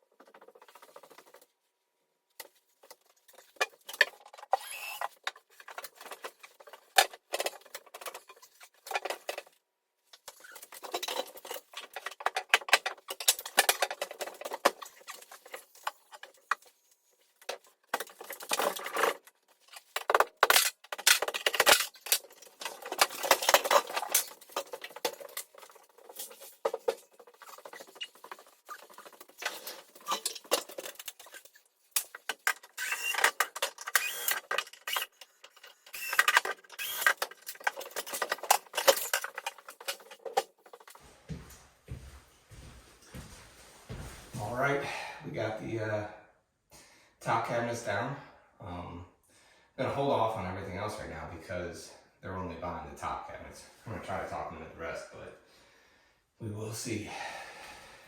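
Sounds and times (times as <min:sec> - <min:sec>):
wall cabinets scraping and rattling: 0:37.7 - 0:45.0.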